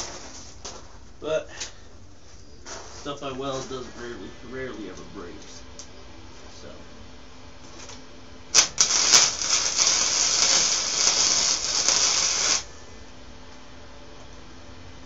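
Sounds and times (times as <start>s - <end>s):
welding arc crackling: 8.5s - 12.7s.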